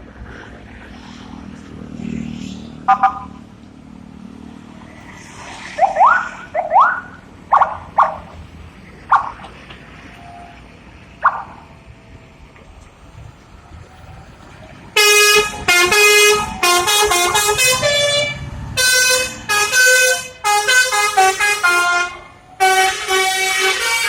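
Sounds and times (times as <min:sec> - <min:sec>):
musical air horn notes: 0:15.0 - 0:24.0.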